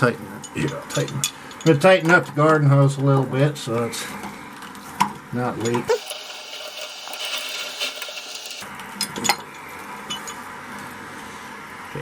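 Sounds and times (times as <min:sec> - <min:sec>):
steady hiss: 0:06.0 - 0:08.6.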